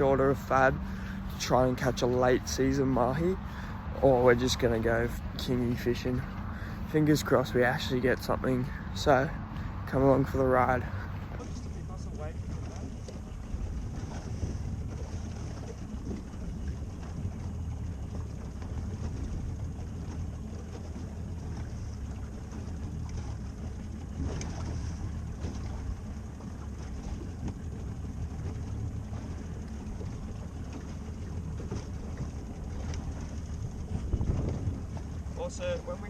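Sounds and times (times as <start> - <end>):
outboard motor running: 0.0 - 36.0
water noise: 0.0 - 36.0
wind noise: 33.7 - 35.1.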